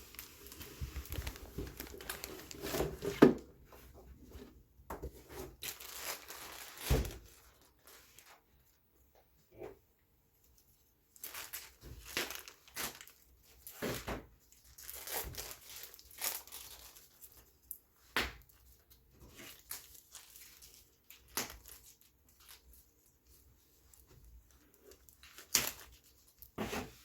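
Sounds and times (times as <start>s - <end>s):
packaging crinkling and tearing: 0.0s - 3.2s, 5.5s - 8.4s, 11.1s - 17.8s, 18.4s - 26.6s.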